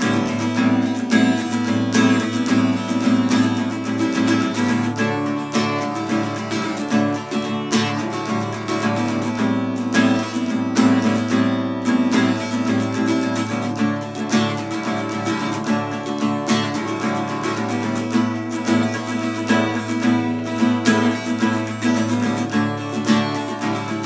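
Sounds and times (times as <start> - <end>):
acoustic guitar strumming: 0.0 - 24.0.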